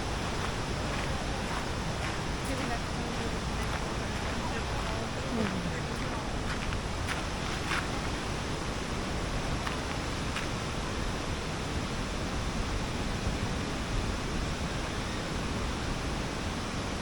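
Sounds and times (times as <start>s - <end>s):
waterfall rushing: 0.0s - 15.6s.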